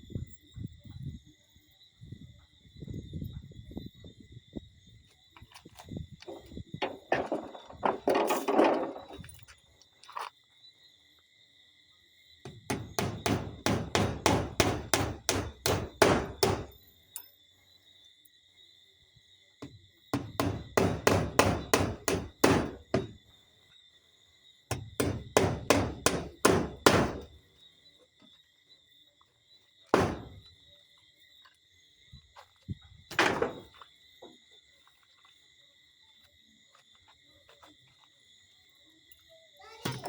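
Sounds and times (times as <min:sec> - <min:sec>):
hammer driving nails: 0:12.5 - 0:16.7, 0:20.2 - 0:23.1, 0:24.7 - 0:27.3, 0:29.9 - 0:30.4.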